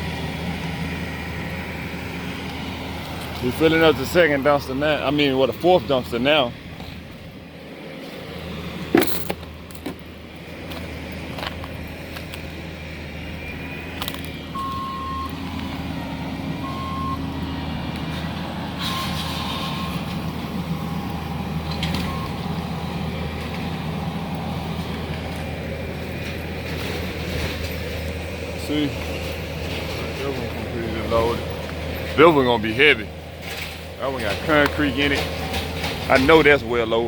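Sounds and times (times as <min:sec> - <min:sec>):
diesel engine running: 0:00.0 - 0:37.0
backup alarm beeping: 0:13.1 - 0:17.5, 0:18.8 - 0:23.3, 0:34.4 - 0:35.4
debris clunking into dumpster: 0:24.8 - 0:37.0.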